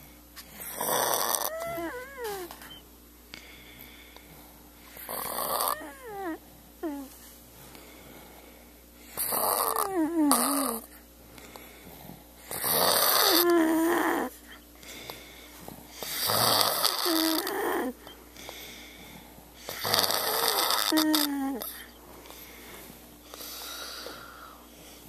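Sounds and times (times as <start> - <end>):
person snoring with whistle: 12.6 - 14.3, 16.1 - 17.9, 19.7 - 21.7.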